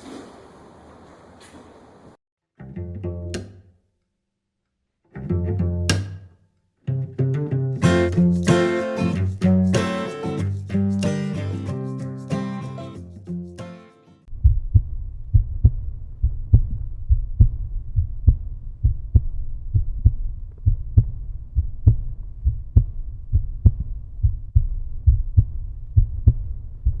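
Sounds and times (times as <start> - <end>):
bass and kick drum beat: 7.8 - 13.7.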